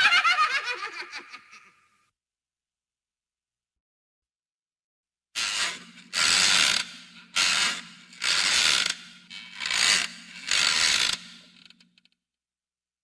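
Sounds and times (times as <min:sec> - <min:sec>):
ratcheting mechanism winding: 0:05.4 - 0:12.2.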